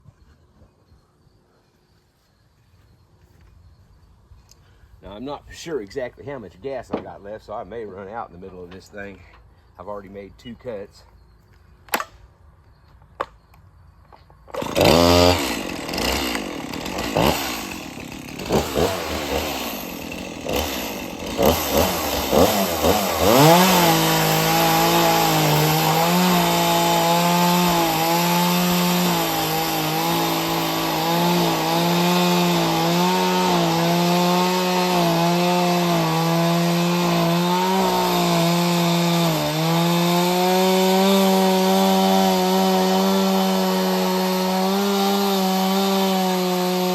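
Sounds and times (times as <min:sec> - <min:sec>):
chainsaw cutting log: 0:14.5 - 0:46.9.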